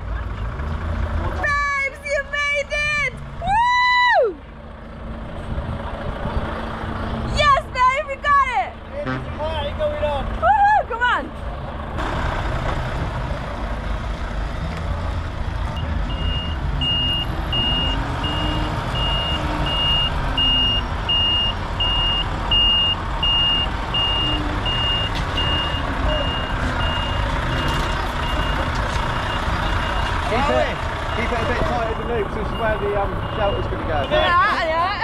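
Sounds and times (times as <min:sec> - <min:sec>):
diesel engine running: 0:00.0 - 0:35.0
reversing alarm beeping: 0:15.8 - 0:30.2, 0:31.1 - 0:34.2.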